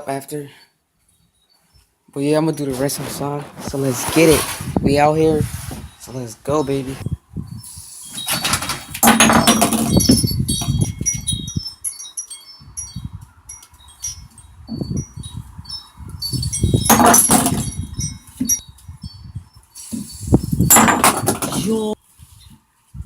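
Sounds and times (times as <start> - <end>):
metallic tinkling: 7.5 - 22.0.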